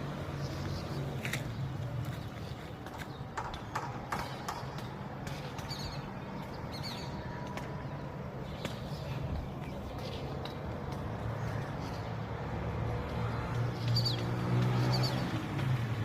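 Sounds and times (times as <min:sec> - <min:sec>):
sharp clicks and knocks: 0:02.8 - 0:05.8.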